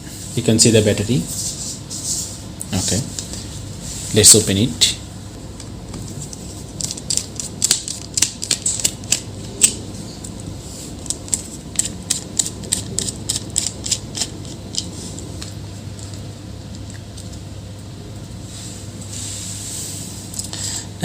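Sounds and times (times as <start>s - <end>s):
hand tools clicking and tapping: 11.0s - 14.9s.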